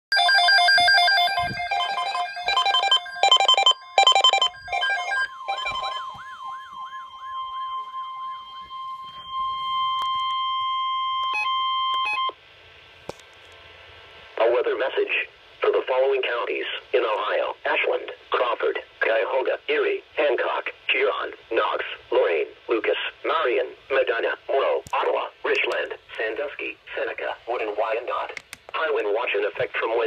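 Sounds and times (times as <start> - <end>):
warbling siren-like alarm tone: 0.1 - 12.3
rapid electronic beeps: 0.2 - 12.3.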